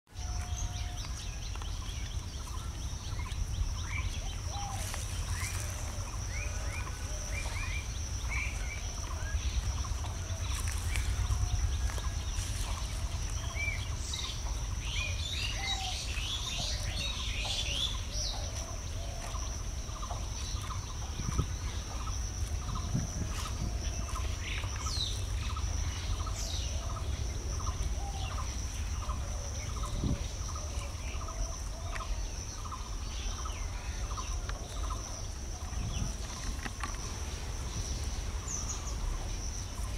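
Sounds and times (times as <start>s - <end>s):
high-pitched insect drone: 0.1s - 39.9s
small birds chirping: 0.1s - 39.9s
low rumble: 4.8s - 15.4s.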